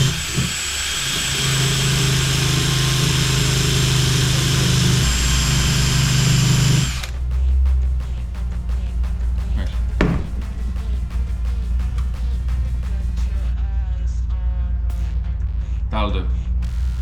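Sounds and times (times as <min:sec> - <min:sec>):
power grinder whining: 0:00.0 - 0:07.2.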